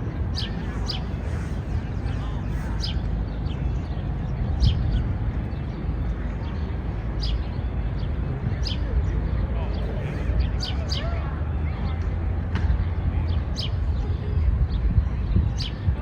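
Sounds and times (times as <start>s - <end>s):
steady low rumble: 0.0s - 7.2s.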